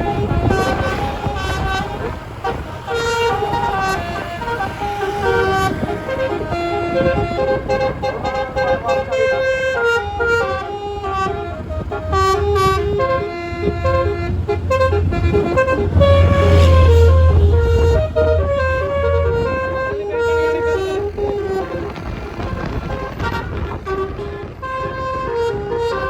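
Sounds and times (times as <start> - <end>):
bus horn playing a tune: 0.0 - 26.0
loud low hum: 11.6 - 21.1.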